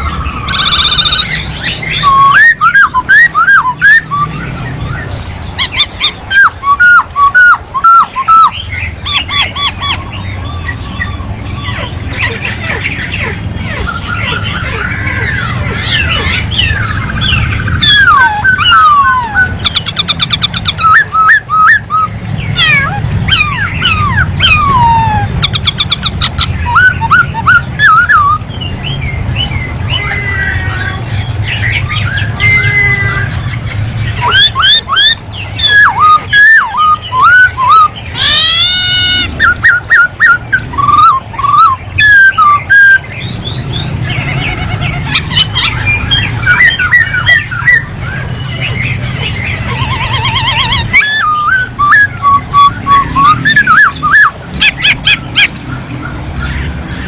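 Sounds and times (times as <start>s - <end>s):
bird singing whistled phrases: 0.0s - 11.9s, 12.7s - 28.8s, 34.2s - 44.0s, 45.2s - 48.7s, 49.6s - 55.6s.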